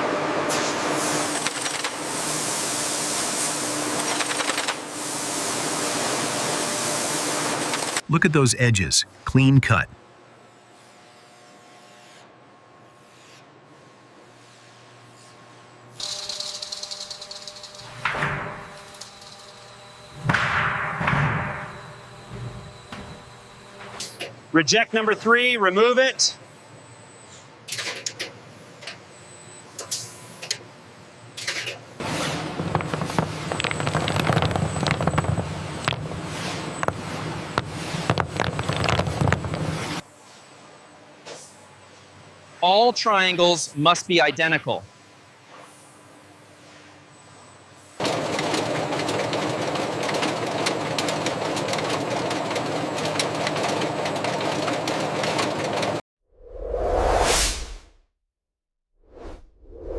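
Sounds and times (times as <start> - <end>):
whoosh: 56.3 - 58.0, 59.0 - 59.9.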